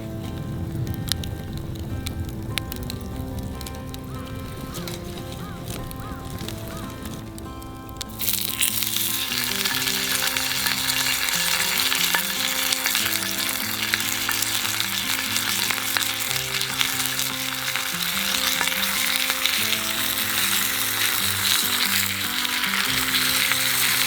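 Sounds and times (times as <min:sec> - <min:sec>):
bacon sizzling in a pan: 0:00.2 - 0:24.0
fat spitting and popping: 0:00.3 - 0:24.0.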